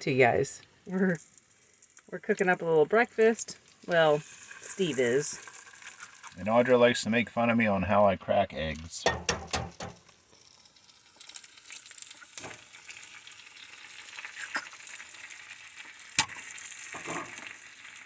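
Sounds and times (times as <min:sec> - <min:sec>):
food sizzling in frying pan: 0:00.8 - 0:07.2, 0:09.0 - 0:18.0
utensils clicking and tapping: 0:09.1 - 0:10.0.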